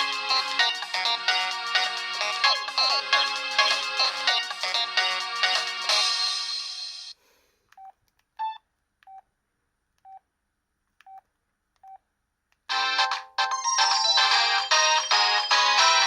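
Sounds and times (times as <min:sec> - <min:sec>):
polyphonic phone ringtone: 0:12.7 - 0:16.0.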